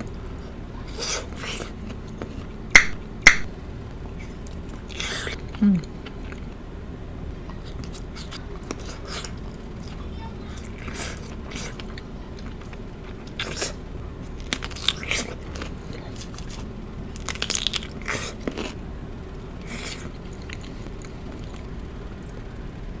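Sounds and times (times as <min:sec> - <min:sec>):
steady low hum: 0:00.0 - 0:23.0
crunchy bites and chewing: 0:07.4 - 0:18.8, 0:19.5 - 0:22.5.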